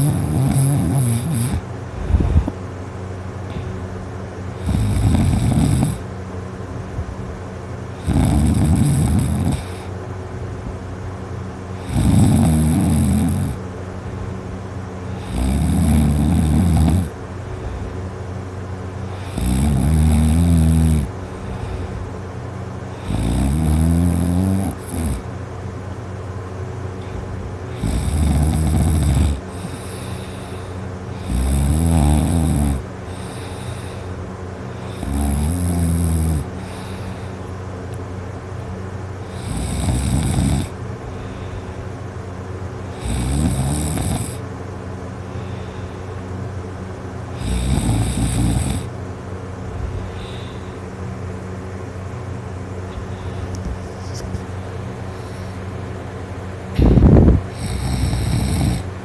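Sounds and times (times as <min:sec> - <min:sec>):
person snoring: 0:00.0 - 0:01.7, 0:04.6 - 0:06.0, 0:08.0 - 0:09.9, 0:11.8 - 0:13.6, 0:15.1 - 0:17.2, 0:19.1 - 0:21.8, 0:22.9 - 0:25.2, 0:27.7 - 0:34.1, 0:34.8 - 0:37.4, 0:39.3 - 0:41.4, 0:43.0 - 0:44.4, 0:47.4 - 0:48.9, 0:56.8 - 0:59.0.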